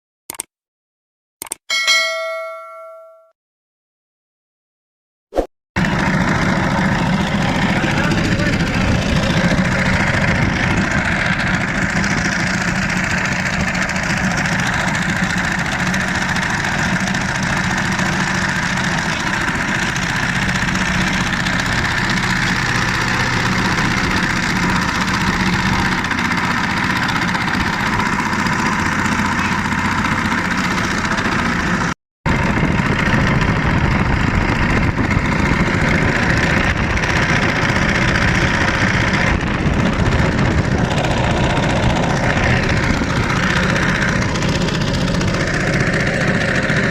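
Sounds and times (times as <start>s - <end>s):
engine running steadily: 5.8s - 46.9s.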